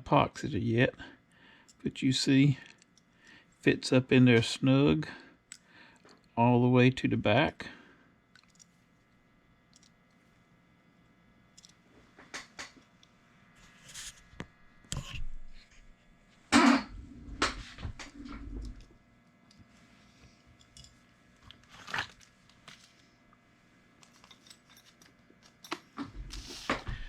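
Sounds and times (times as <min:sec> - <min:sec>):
small objects clicking and knocking: 0:08.3 - 0:08.7, 0:09.7 - 0:10.0, 0:11.6 - 0:12.8.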